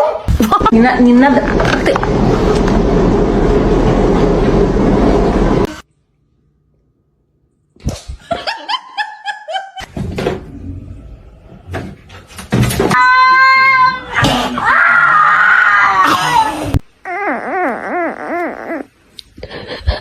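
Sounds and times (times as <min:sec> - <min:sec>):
loud wailing cries: 0:13.0 - 0:18.9.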